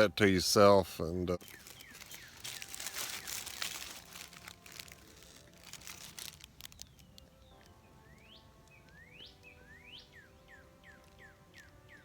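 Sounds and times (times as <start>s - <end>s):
songbird chirping: 0.0s - 12.0s
wrapper crinkling: 1.4s - 7.7s.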